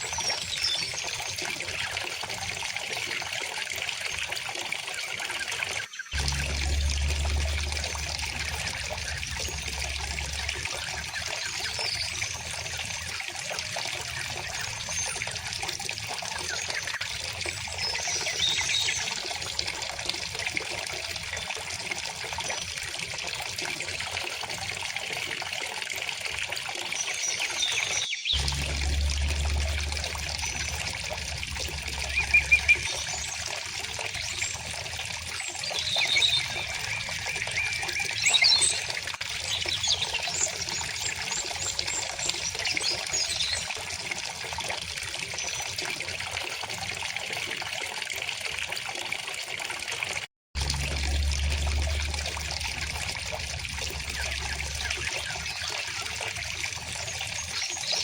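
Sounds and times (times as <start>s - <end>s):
river water flowing: 6.2s - 13.2s, 28.4s - 38.8s, 50.6s - 58.0s.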